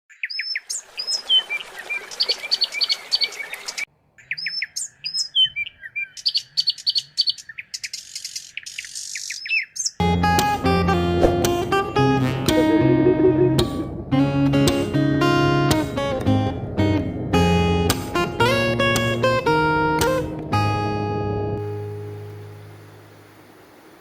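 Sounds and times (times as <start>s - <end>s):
birds chirping and calling: 0.1s - 10.0s
acoustic guitar music: 10.0s - 22.8s.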